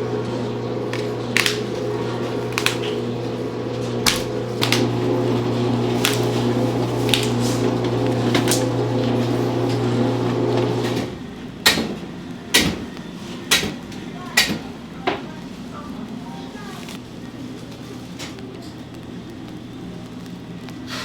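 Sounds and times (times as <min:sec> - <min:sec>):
electric machine hum: 0:00.0 - 0:13.2
kitchen work clicks and knocks: 0:00.9 - 0:09.9, 0:10.8 - 0:15.3.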